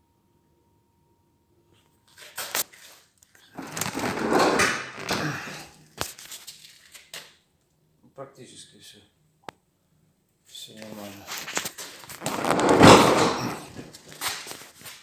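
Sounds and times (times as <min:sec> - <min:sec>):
rubbing: 0:11.4 - 0:14.2.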